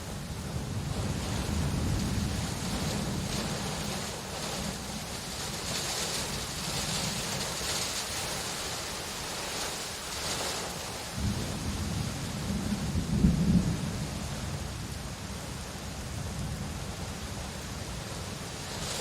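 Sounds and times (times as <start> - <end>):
thunder rumble: 0.0 - 8.7, 9.3 - 15.3
steady rain hiss: 0.0 - 19.0.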